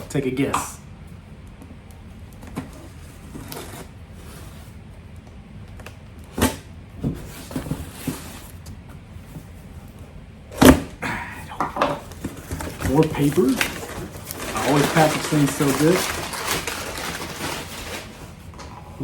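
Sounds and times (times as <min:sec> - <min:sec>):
sharp crinkles and knocks: 0:11.7 - 0:19.0
paper packing rustling: 0:12.0 - 0:19.0.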